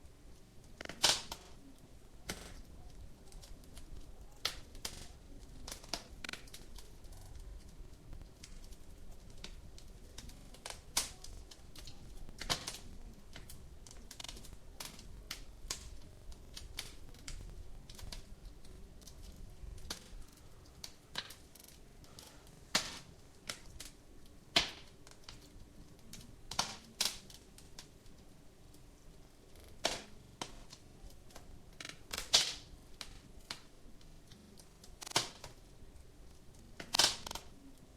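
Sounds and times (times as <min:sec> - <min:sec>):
fire crackling and popping: 0:00.0 - 0:37.9
faint low rumble: 0:01.5 - 0:21.1.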